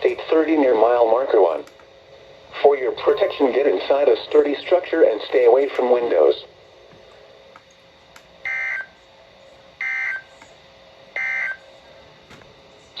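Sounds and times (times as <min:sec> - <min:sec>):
faint radio hiss: 0:00.0 - 0:07.5
screechy digital data bursts: 0:11.2 - 0:11.6.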